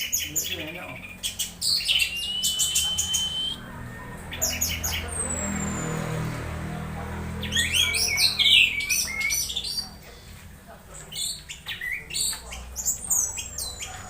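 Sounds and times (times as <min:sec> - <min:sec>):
bird whistling: 0:00.0 - 0:06.0, 0:07.5 - 0:10.3
bird chirping: 0:00.0 - 0:06.6, 0:07.2 - 0:14.0.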